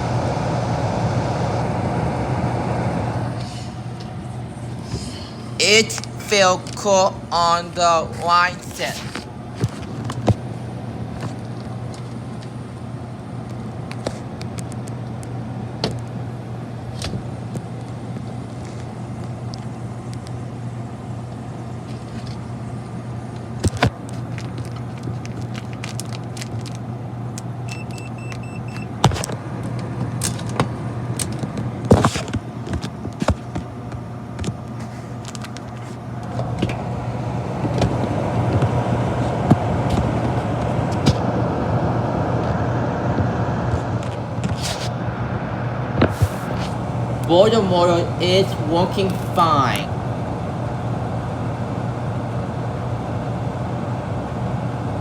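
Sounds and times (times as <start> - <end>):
air conditioner humming: 0.0 - 55.0.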